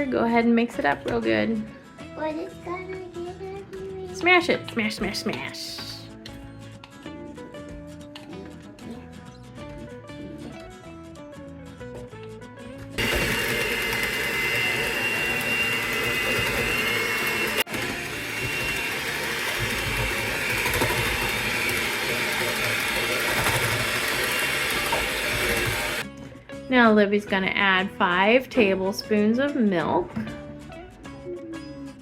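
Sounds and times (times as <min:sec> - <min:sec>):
soft music: 0:00.0 - 0:32.0
electric mixer whining: 0:13.0 - 0:26.1.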